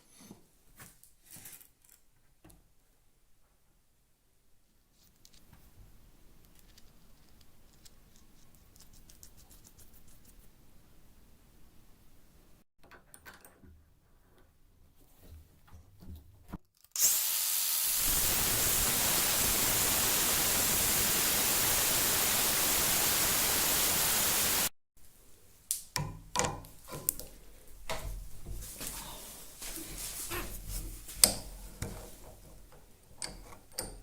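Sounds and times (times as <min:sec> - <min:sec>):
power tool grinding metal: 0:17.0 - 0:22.2.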